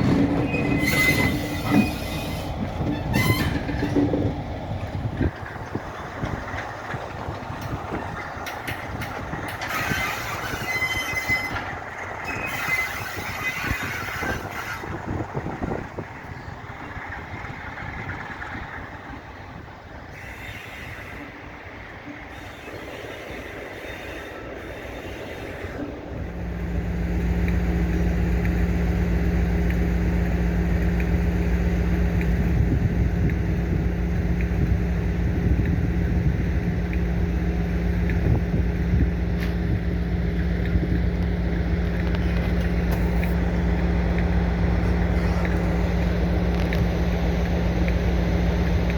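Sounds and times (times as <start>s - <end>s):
train wheels squealing on rails: 0.0s - 4.3s, 7.6s - 15.2s, 20.0s - 26.0s
diesel engine drone: 0.0s - 48.9s.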